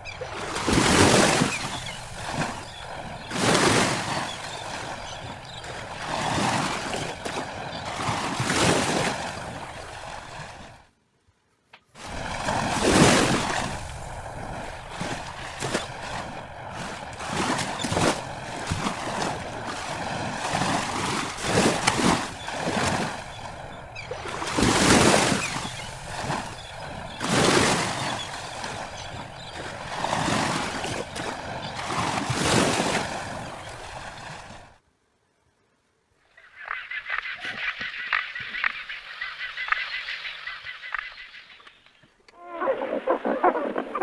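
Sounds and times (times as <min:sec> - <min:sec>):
sea waves washing in: 0:00.0 - 0:10.9, 0:12.0 - 0:34.8.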